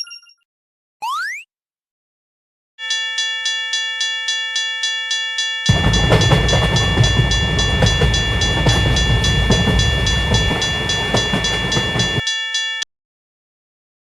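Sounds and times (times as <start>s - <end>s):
railroad crossing bell ringing: 2.8s - 12.8s
train rumbling past: 5.7s - 12.2s.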